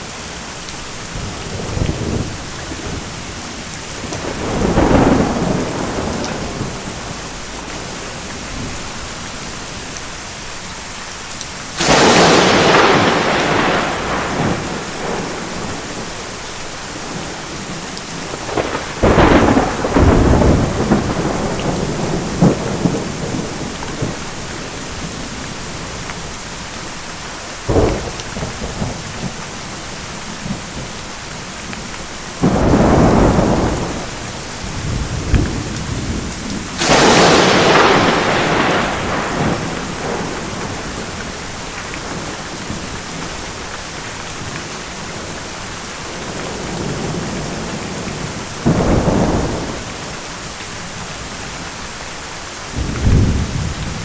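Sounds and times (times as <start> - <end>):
steady rain: 0.0 - 54.0
thunder cracks and rumbles: 1.2 - 8.9, 11.8 - 16.2, 17.0 - 26.0, 27.7 - 29.4, 32.4 - 43.5, 46.1 - 51.6, 52.7 - 54.0.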